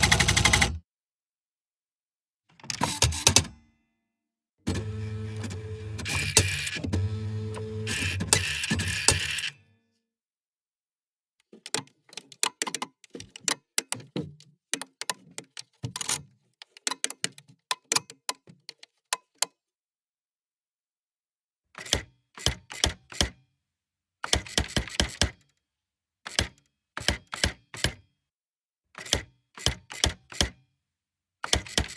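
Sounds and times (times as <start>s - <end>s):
electric typewriter key strikes: 0.0s - 0.8s, 31.5s - 31.9s.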